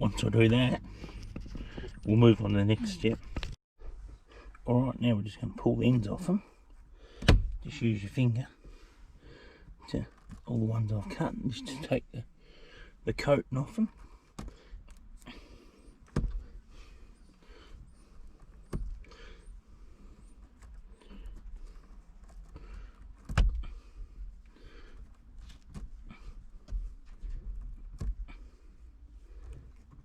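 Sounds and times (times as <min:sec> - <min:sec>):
wires rustling and clicking: 0:14.0 - 0:30.0.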